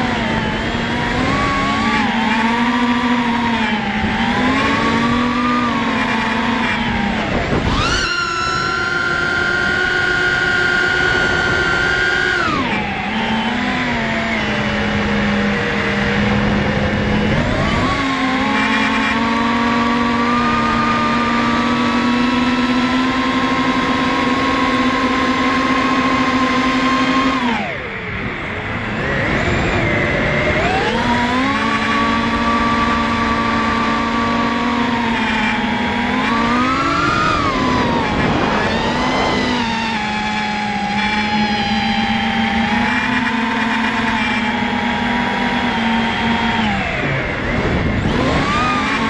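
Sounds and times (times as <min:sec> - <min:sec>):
quadcopter motors whining: 0:00.0 - 0:49.0.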